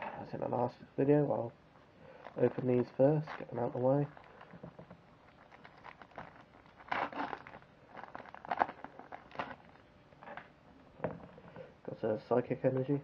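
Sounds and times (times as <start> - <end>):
plastic wrapper crinkling and tearing: 2.1 - 10.5.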